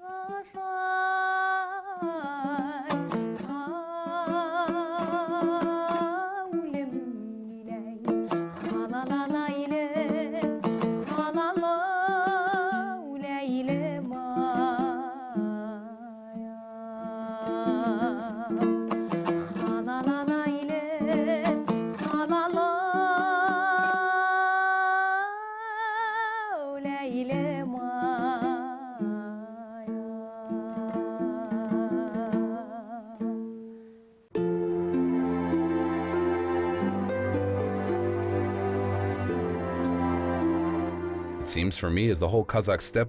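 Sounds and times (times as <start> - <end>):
plucked string instrument: 0.0 - 25.3, 26.2 - 43.0.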